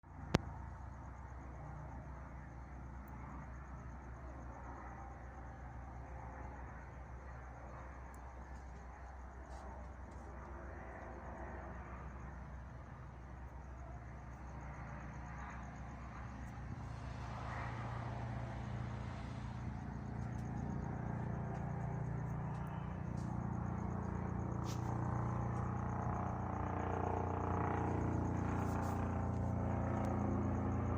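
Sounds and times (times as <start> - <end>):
helicopter engine and rotor: 9.6 - 30.9.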